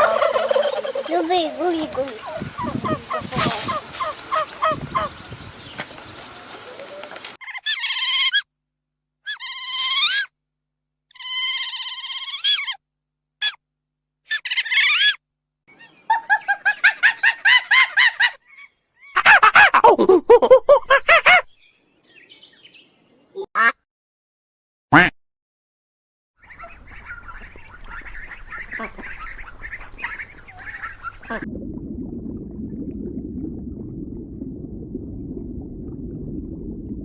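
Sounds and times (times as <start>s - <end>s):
bird calling: 0.0s - 7.4s, 26.4s - 31.4s.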